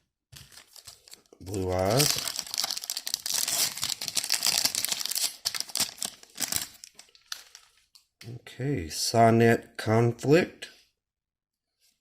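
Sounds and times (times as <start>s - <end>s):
foil wrapper crinkling and tearing: 0.4s - 7.8s.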